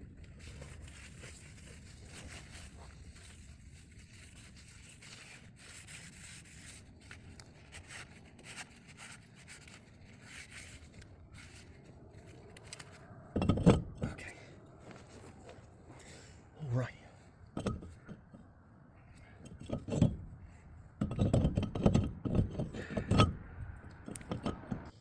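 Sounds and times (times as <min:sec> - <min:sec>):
faint rustling and rubbing: 0:00.0 - 0:16.2.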